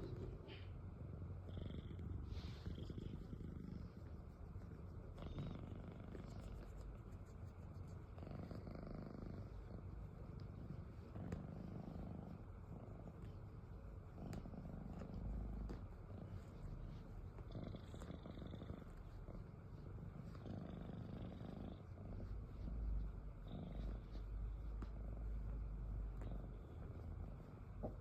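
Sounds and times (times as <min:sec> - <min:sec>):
cat snoring: 0:00.0 - 0:03.9, 0:08.2 - 0:09.8, 0:10.5 - 0:12.8, 0:17.4 - 0:19.4, 0:20.3 - 0:24.1, 0:26.1 - 0:27.0.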